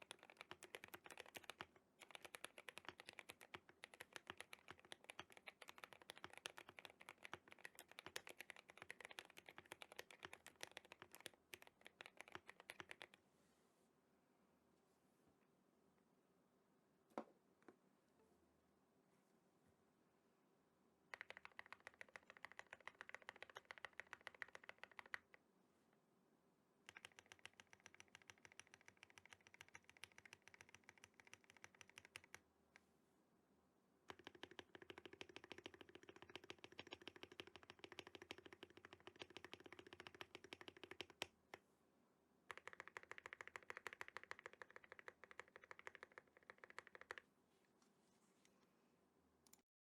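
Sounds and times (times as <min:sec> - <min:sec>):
mechanical keyboard typing: 0:00.0 - 0:13.2, 0:21.1 - 0:25.4, 0:26.9 - 0:32.4, 0:34.1 - 0:41.3, 0:42.5 - 0:47.2.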